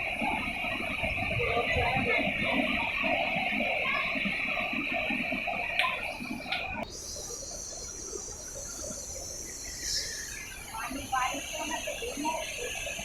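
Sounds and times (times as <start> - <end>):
insects droning: 0.0 - 13.0
higher-pitched insect drone: 5.8 - 13.0.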